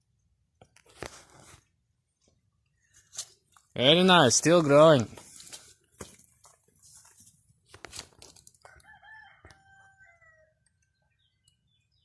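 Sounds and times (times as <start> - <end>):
small bird chirping: 10.7 - 12.0.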